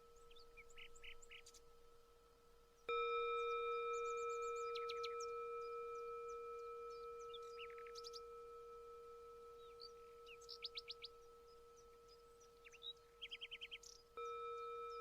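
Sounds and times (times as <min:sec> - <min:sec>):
meditation bell ringing: 0:00.0 - 0:15.0
small birds chirping: 0:00.0 - 0:15.0.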